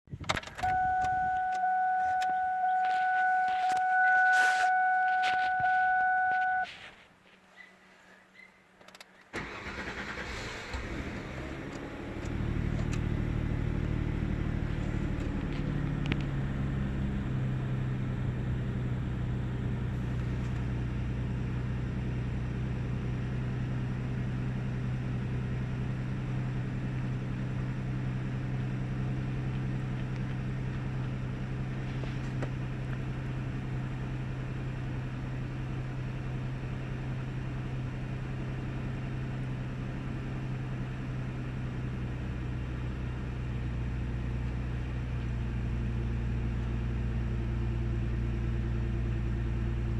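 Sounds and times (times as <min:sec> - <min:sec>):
car engine starting and idling: 0:00.1 - 0:06.6, 0:09.3 - 0:49.9
steady electronic tone: 0:00.6 - 0:06.7.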